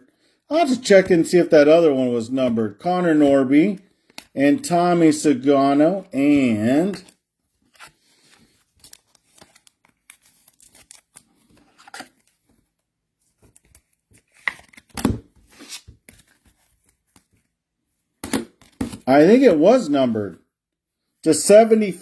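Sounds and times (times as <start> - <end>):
trading cards rustling and tapping: 13.3 - 17.5, 18.2 - 19.1.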